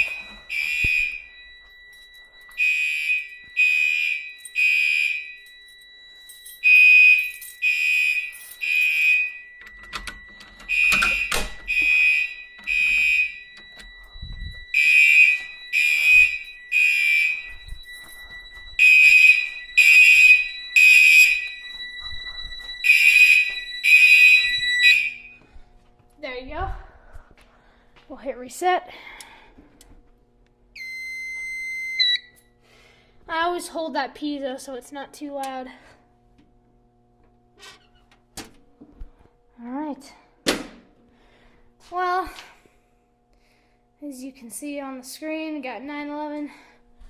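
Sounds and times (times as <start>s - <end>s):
fire alarm horn blasts: 0.0s - 25.7s, 30.7s - 33.1s
steady high buzzer tone: 0.0s - 26.8s, 30.7s - 33.6s.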